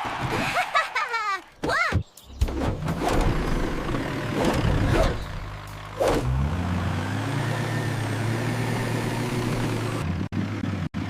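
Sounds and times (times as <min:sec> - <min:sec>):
vehicle engine revving: 0:02.8 - 0:11.0.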